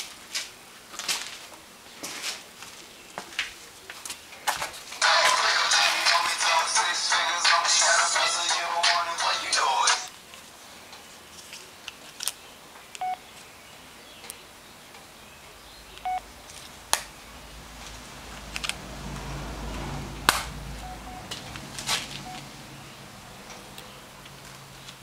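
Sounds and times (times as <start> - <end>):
short electronic beeps: 13.0 - 13.2, 16.0 - 16.3, 20.8 - 21.4, 22.2 - 22.5.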